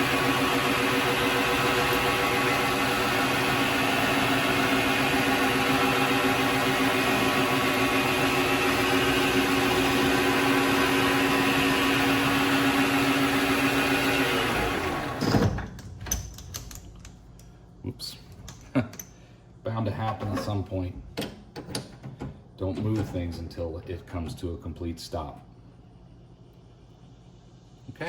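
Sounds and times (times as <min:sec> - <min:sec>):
mini lathe running: 0:00.0 - 0:15.2
motor whine winding down: 0:00.0 - 0:15.4.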